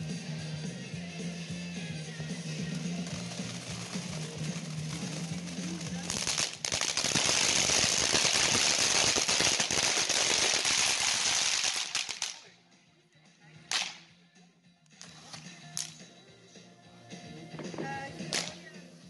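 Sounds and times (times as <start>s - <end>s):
fireworks crackling: 0.0s - 12.5s, 13.7s - 14.0s, 18.1s - 18.8s.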